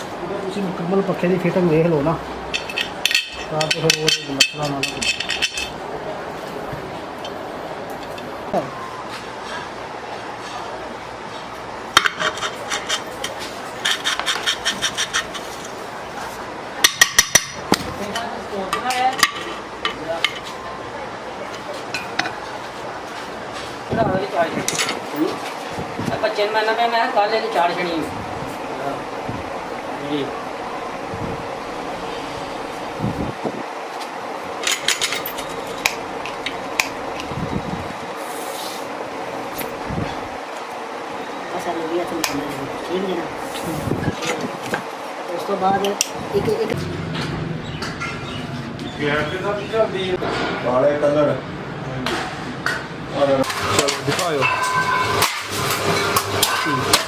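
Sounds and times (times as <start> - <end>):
workshop background noise: 0.0 - 57.0
hand tool sharp strokes: 12.2 - 15.8.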